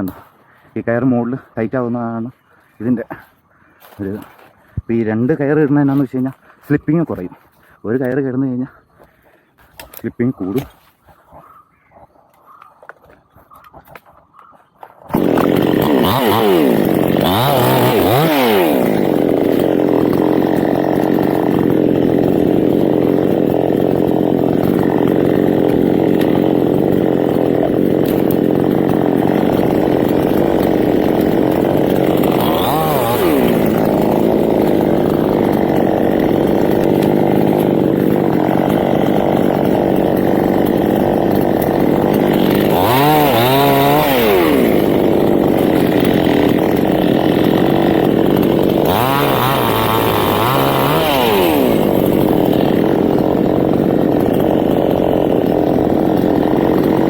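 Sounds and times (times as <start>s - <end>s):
chainsaw cutting wood: 0.0s - 0.5s, 9.0s - 57.0s.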